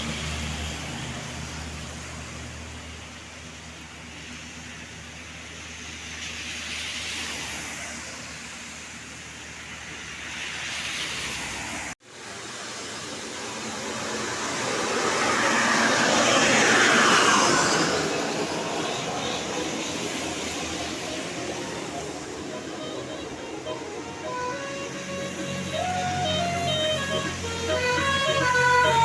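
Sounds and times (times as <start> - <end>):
passing vehicles rushing: 0.0 - 29.0
vehicle approaching: 7.1 - 29.0
low engine hum: 17.4 - 29.0.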